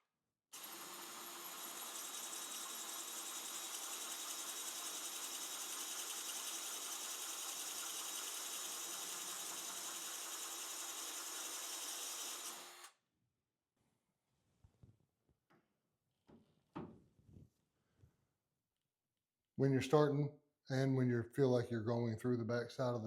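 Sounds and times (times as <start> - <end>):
drill boring through tile: 0.6 - 13.0.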